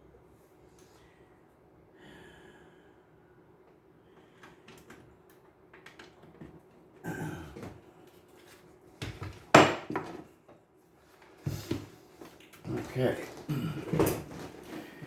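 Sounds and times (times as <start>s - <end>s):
clicks and knocks of objects handled: 4.7s - 6.8s.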